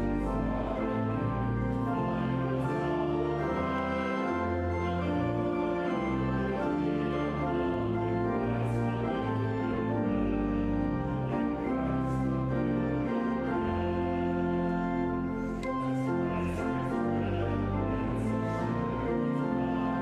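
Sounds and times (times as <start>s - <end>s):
hymn chords over deep bass: 0.0s - 20.0s.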